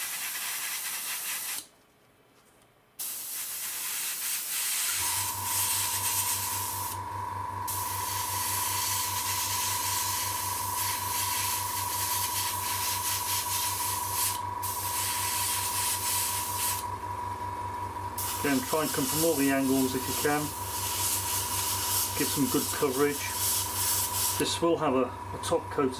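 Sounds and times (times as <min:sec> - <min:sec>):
airbrush spraying hiss: 0:00.0 - 0:01.6, 0:03.0 - 0:07.0, 0:07.7 - 0:16.8, 0:18.2 - 0:24.4
small motor whine: 0:04.9 - 0:24.5.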